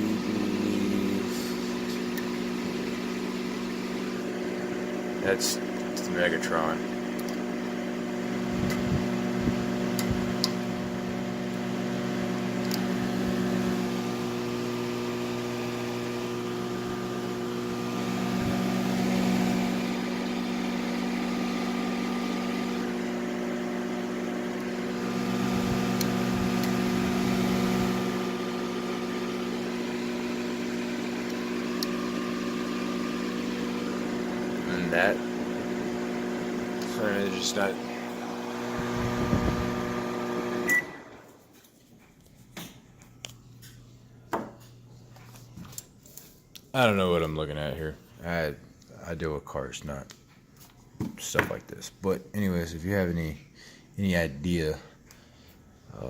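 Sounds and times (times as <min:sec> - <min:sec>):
microwave oven humming: 0:00.0 - 0:41.4.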